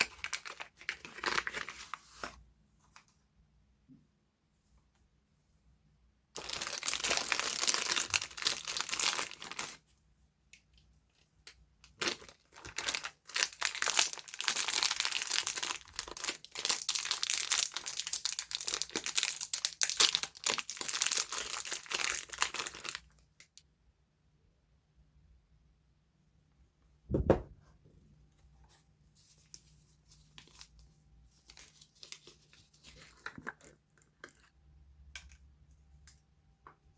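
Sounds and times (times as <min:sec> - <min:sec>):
soap packaging crinkling: 0:00.0 - 0:02.4, 0:06.4 - 0:09.8, 0:10.6 - 0:23.6, 0:29.3 - 0:36.2.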